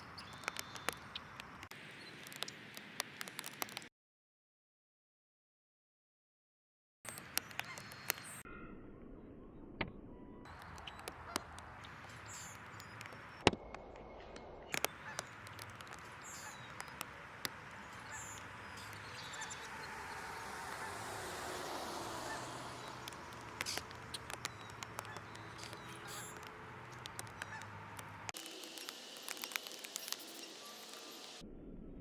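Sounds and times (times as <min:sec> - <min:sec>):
wild birds calling: 0:00.0 - 0:03.6, 0:07.1 - 0:08.4, 0:10.5 - 0:28.3.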